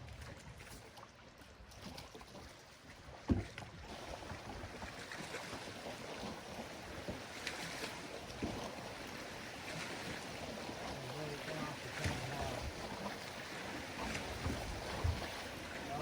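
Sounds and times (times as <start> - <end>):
water lapping against boat hull: 0.0 - 16.0
wind on microphone: 14.0 - 16.0
sharp knock on boat: 14.1 - 15.2.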